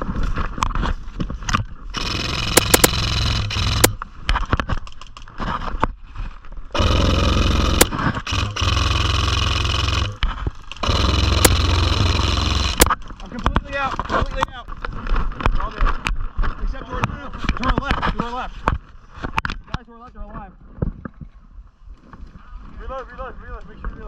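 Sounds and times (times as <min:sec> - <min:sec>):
sharp clicks: 0:01.5 - 0:05.3, 0:06.8 - 0:14.5
airsoft gun full-auto bursts: 0:01.9 - 0:04.0, 0:06.8 - 0:13.0.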